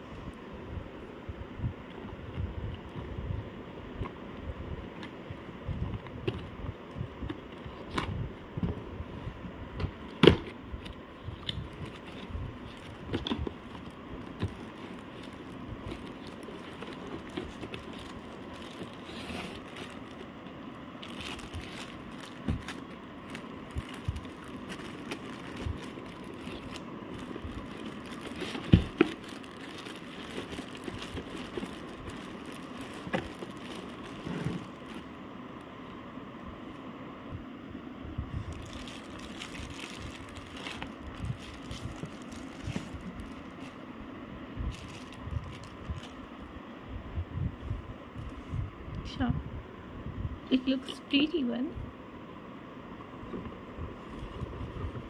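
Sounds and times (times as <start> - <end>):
wrapping crinkling and tearing: 10.8 - 35.2, 38.5 - 43.9, 44.7 - 46.3.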